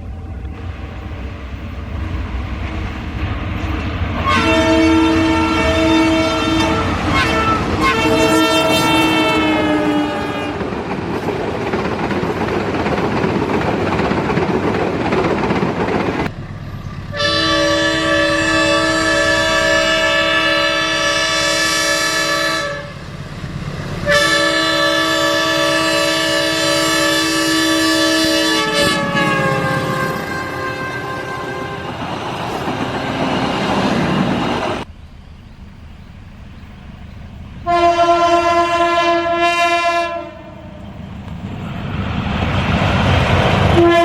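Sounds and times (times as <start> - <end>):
train rumbling past: 0.0 - 44.0
locomotive air horn blasts: 4.2 - 10.7, 17.0 - 23.1, 24.0 - 32.0, 37.6 - 40.8, 43.7 - 44.0.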